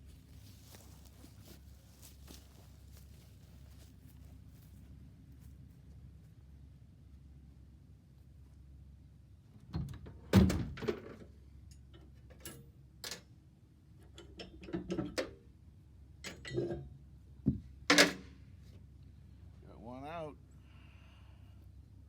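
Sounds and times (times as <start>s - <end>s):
metal knocks and clatter: 16.3s - 16.9s.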